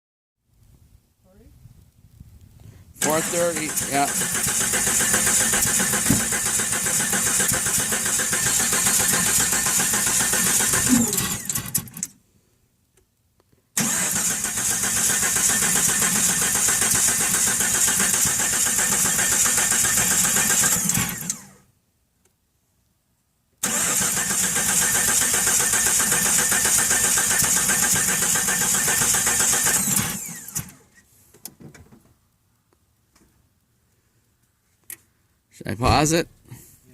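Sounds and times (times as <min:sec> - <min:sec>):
starter cranking engine: 0:03.0 - 0:12.1, 0:13.8 - 0:21.6, 0:23.6 - 0:30.9.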